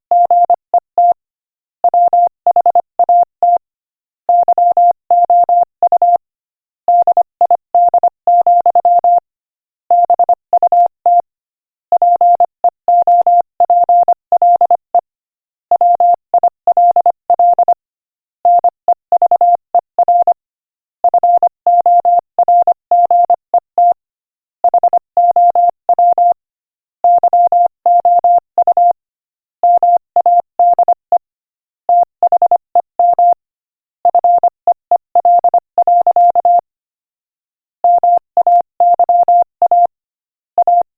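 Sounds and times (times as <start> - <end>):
morse code beeps: 0.1 - 1.2, 1.9 - 3.6, 6.9 - 9.2, 9.9 - 11.3, 12.0 - 15.1, 15.8 - 17.8, 18.5 - 20.4, 21.0 - 24.0, 24.6 - 26.4, 27.0 - 29.0, 29.6 - 31.3, 31.9 - 33.4, 34.0 - 36.7, 37.8 - 40.0, 40.6 - 40.9.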